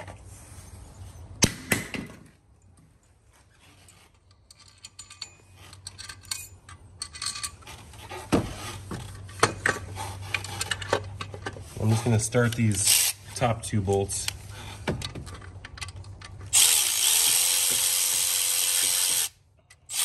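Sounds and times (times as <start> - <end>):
metal tools clinking: 3.6 - 7.8.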